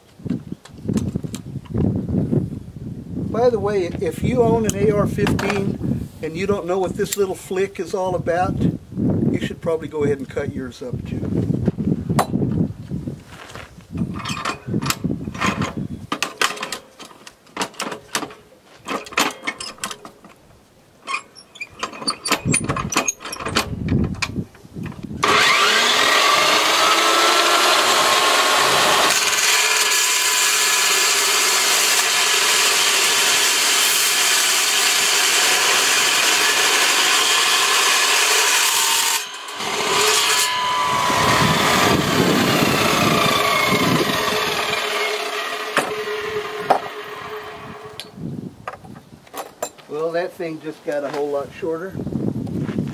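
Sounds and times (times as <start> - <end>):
metal parts clicking and knocking: 14.2 - 20.4, 21.1 - 24.4
power tool cutting metal: 25.2 - 48.1.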